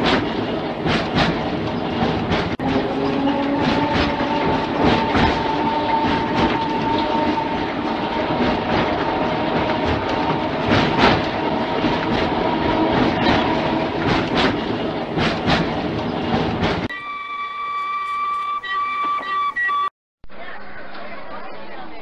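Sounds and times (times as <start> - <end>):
train wheels clicking over rail joints: 0.0 - 16.9
train rumble: 0.0 - 17.0.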